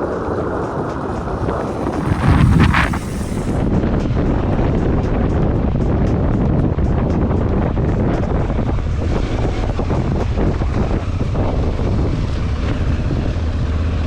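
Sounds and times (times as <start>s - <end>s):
motorcycle engine running: 0.0s - 3.7s
wind buffeting microphone: 0.0s - 14.0s.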